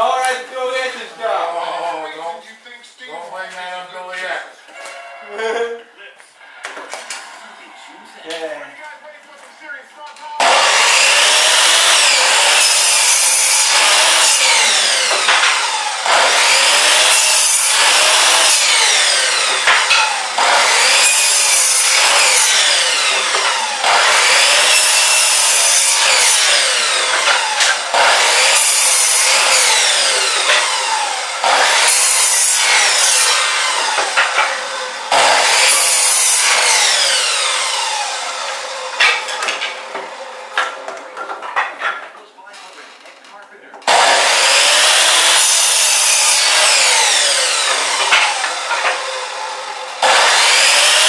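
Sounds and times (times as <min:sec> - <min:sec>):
saw cutting through wood: 0:10.3 - 0:43.0, 0:43.8 - 0:51.0.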